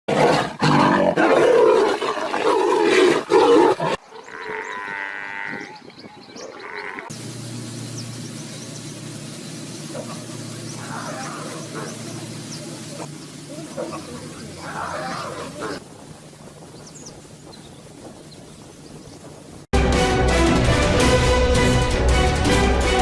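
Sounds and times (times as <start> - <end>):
animals snarling and growling: 0.1 - 5.8, 9.9 - 15.8.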